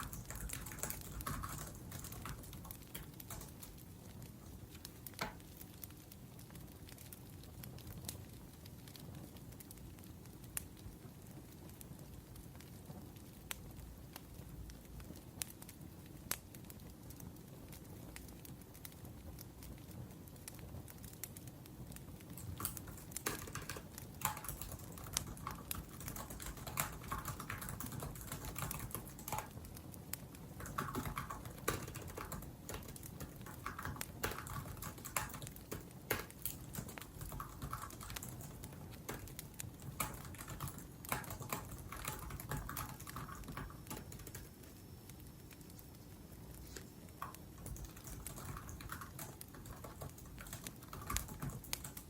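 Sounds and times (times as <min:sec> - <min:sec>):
laptop keyboard typing: 0:00.0 - 0:06.0, 0:22.2 - 0:44.7, 0:46.7 - 0:52.0
wood fire crackling: 0:00.0 - 0:52.0.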